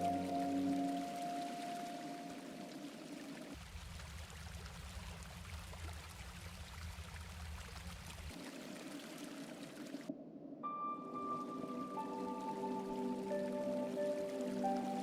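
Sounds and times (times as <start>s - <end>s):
music tones: 0.0s - 2.9s, 10.6s - 15.0s.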